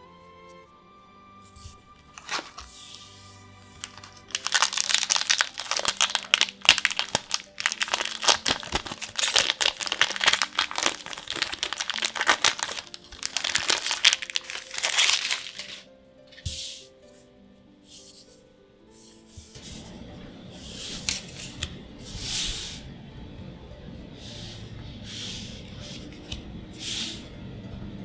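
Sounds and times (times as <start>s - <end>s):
foil wrapper crinkling: 2.0s - 15.9s.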